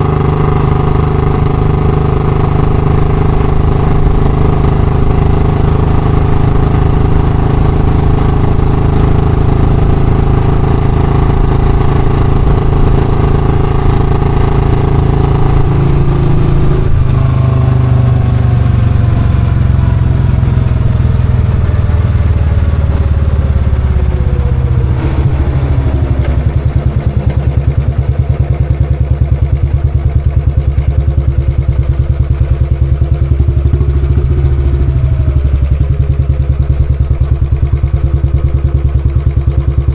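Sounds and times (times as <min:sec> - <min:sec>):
single-cylinder motorcycle engine: 0:00.0 - 0:39.9.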